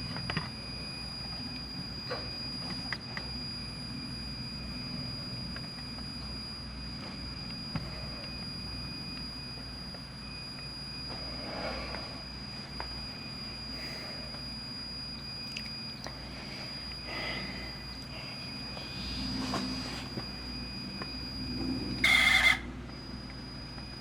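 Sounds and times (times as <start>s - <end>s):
loud squeal: 18.4s - 22.8s.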